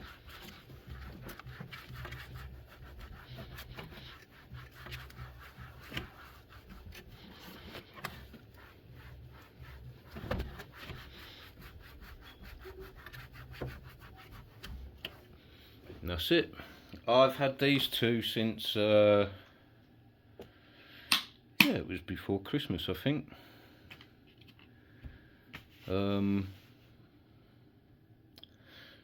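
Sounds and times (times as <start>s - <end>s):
cloth rubbing on build plate: 0.0s - 16.2s.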